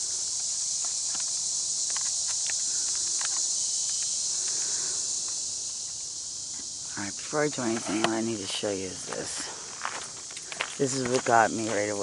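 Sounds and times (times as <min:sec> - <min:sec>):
insects chirping: 0:00.0 - 0:12.0
light clicks and crackles: 0:00.4 - 0:04.6.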